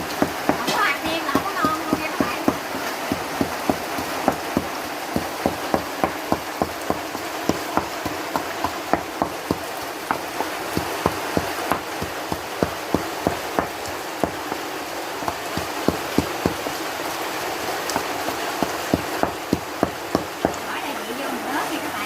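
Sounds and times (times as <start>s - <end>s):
pestle pounding in mortar: 0.0s - 20.7s
heavy rain hissing: 0.0s - 22.0s.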